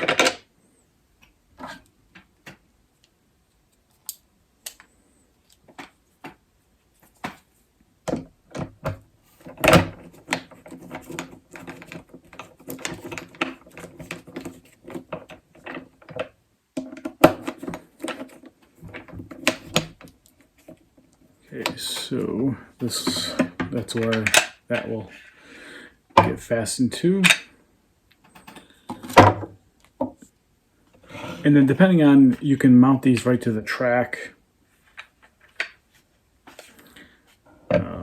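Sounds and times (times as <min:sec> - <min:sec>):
plastic bracket clicking and rattling: 0:08.1 - 0:20.8.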